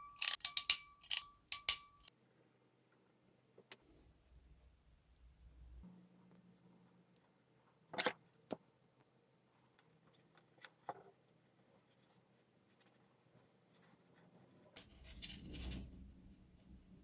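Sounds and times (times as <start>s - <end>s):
sharp clicks: 0.1s - 2.1s.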